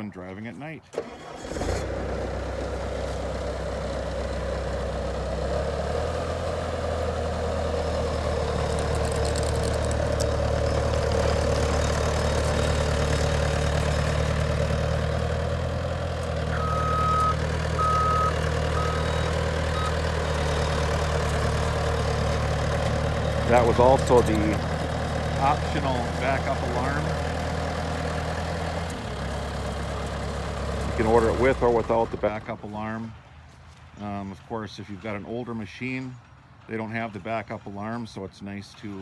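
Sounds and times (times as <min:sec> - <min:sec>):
skid steer engine running: 0:00.9 - 0:33.2
backup alarm beeps: 0:16.5 - 0:20.6.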